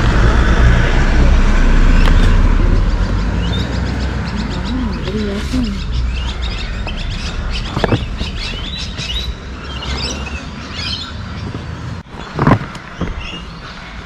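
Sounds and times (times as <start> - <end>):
low steady rumble: 0.0 - 12.3
small birds chirping: 1.8 - 14.0
loud thump: 6.8 - 9.2.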